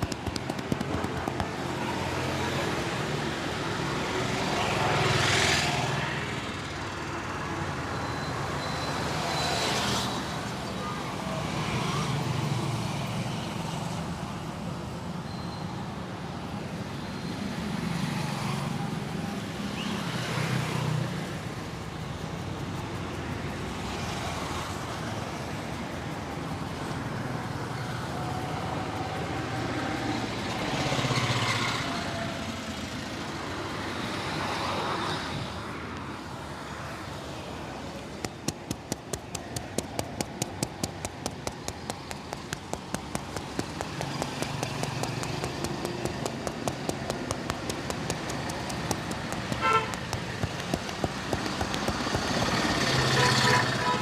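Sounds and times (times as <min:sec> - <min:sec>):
hands slapping in massage: 0:00.0 - 0:02.0, 0:38.2 - 0:53.4
street traffic: 0:00.0 - 0:54.0.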